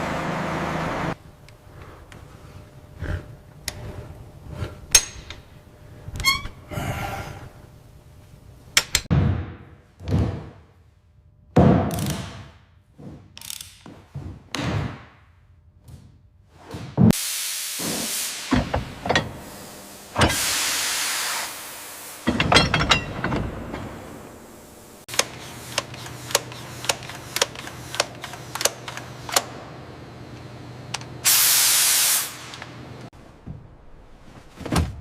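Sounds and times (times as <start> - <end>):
thunks and knocks: 18.5 - 19.4.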